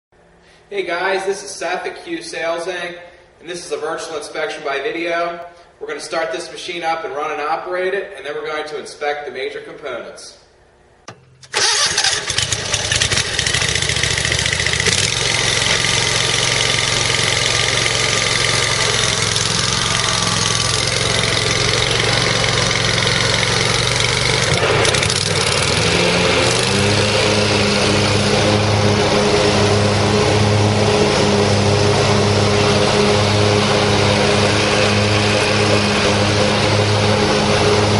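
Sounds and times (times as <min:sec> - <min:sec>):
mower engine running: 0:11.2 - 0:37.9.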